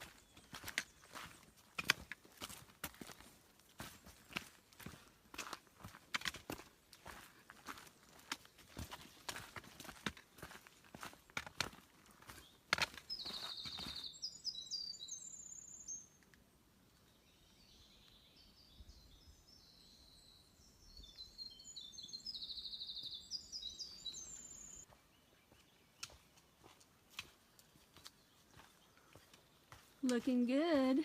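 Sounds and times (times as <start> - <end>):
songbird trilling: 13.1 - 16.1.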